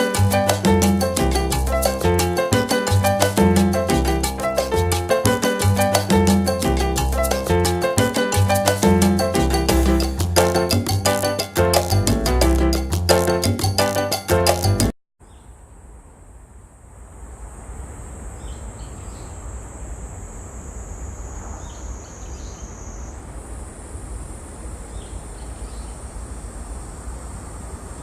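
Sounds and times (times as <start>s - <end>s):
music: 0.0s - 14.9s
cicada buzzing: 18.3s - 28.0s.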